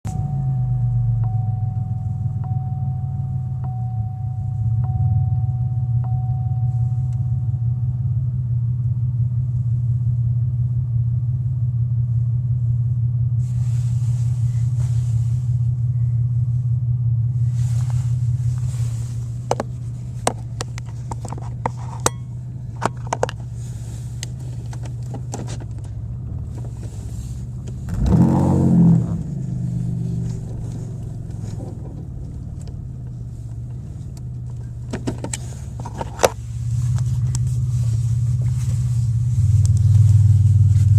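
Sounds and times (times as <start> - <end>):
car engine low drone: 0.0 - 40.9
engine revving: 26.3 - 33.2.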